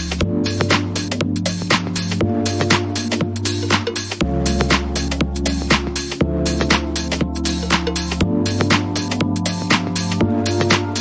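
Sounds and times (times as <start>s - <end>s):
electronic music with steady beat: 0.0s - 11.0s.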